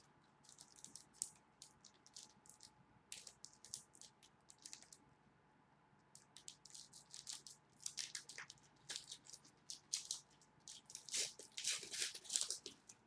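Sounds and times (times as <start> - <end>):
foil wrapper tearing and crinkling: 6.8 - 12.8.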